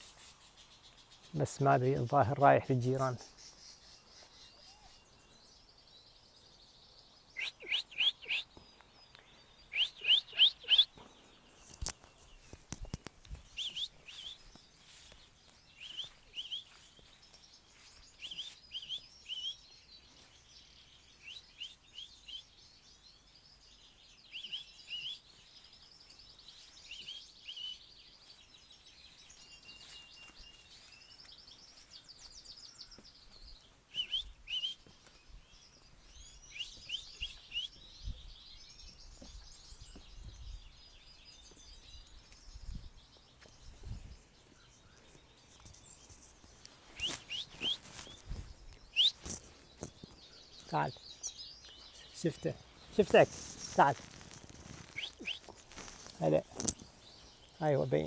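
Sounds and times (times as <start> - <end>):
small birds chirping: 0.0 - 58.0
high bird twittering: 7.3 - 11.0, 13.5 - 15.1, 15.7 - 17.2, 17.8 - 19.8, 23.7 - 25.4, 29.3 - 35.0, 35.6 - 42.8, 43.6 - 58.0.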